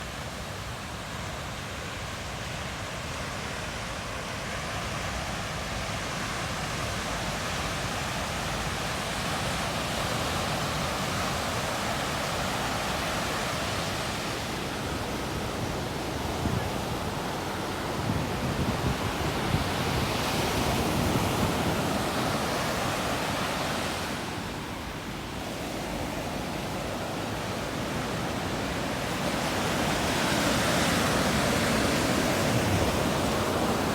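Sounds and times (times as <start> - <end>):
surf breaking on a beach: 0.0 - 33.9
wind on the microphone: 14.6 - 33.9.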